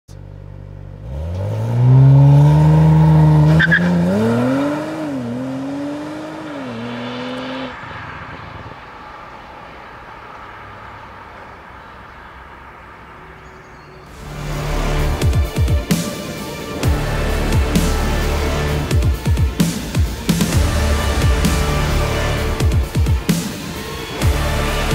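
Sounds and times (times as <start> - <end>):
car engine accelerating hard: 0.2 - 16.0.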